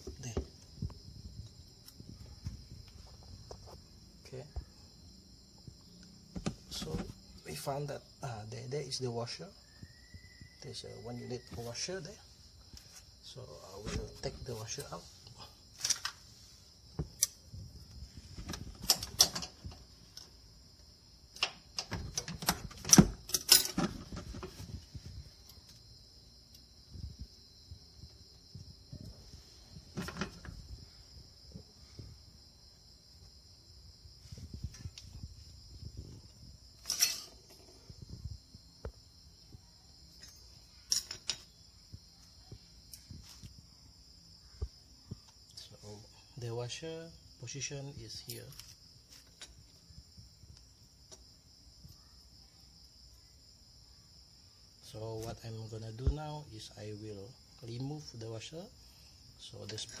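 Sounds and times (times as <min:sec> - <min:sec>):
crickets chirring: 0:00.0 - 1:00.0
small metal clicks and clinks: 0:40.1 - 0:41.5.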